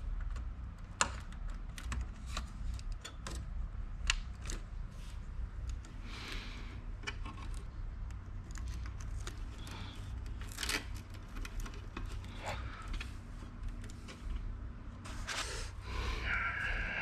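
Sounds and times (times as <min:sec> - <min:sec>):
computer hardware clicks and scrapes: 0:00.1 - 0:15.4
low hum: 0:03.5 - 0:17.0.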